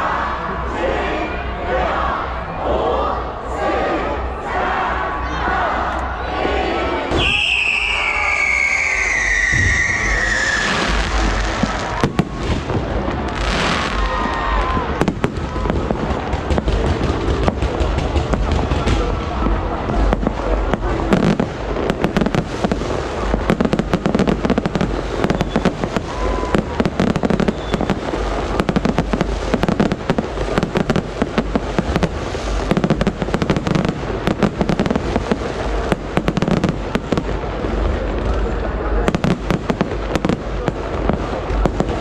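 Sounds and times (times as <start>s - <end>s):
fireworks bangs and crackles: 6.5s - 42.0s
low booming rumble: 9.5s - 42.0s.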